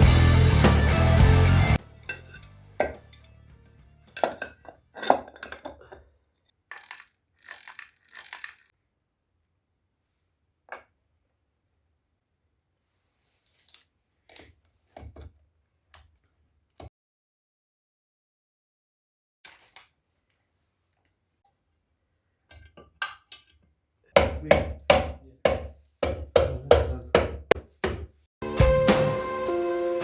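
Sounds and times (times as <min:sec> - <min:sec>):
music: 0:00.0 - 0:04.2, 0:28.4 - 0:30.0
small metal parts clinking: 0:06.7 - 0:08.7.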